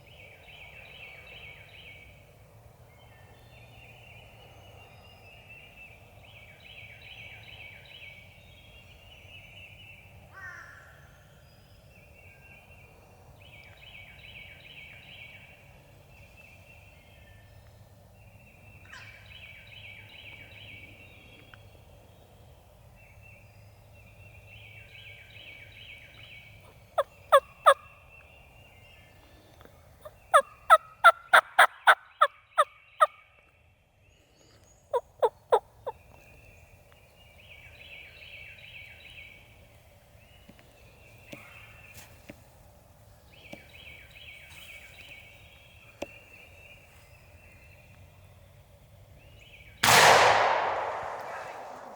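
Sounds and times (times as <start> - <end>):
wild turkey calling: 26.7 - 27.9, 30.0 - 33.2, 34.9 - 36.0.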